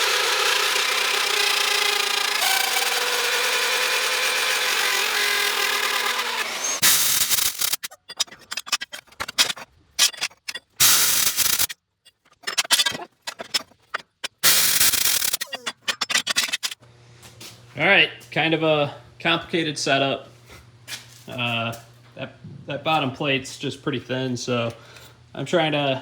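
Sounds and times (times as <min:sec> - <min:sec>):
power tool motor running: 0:00.0 - 0:08.9, 0:10.4 - 0:11.7, 0:14.2 - 0:16.8.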